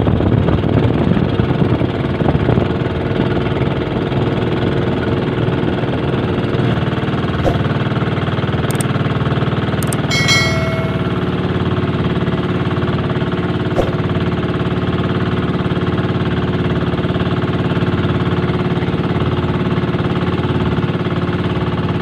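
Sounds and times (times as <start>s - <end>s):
metallic ring: 9.8s - 11.6s
small boat engine running: 11.8s - 22.0s.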